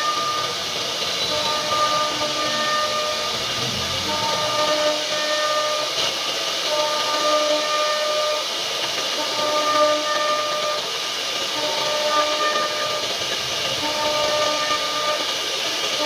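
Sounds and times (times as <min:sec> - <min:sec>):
router spindle cutting wood: 0:00.0 - 0:05.8.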